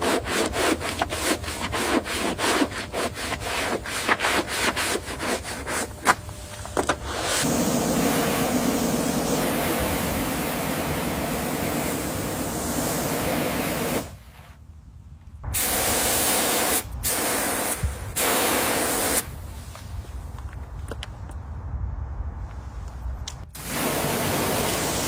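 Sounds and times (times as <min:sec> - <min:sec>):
spray hissing: 0:07.1 - 0:14.5, 0:15.5 - 0:19.3, 0:23.6 - 0:25.0.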